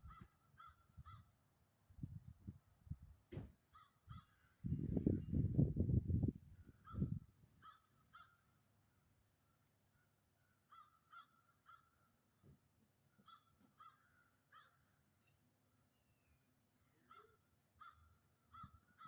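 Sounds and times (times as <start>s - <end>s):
faint bird calls: 6.7s - 8.5s, 10.7s - 12.1s, 13.1s - 15.1s, 16.9s - 19.0s.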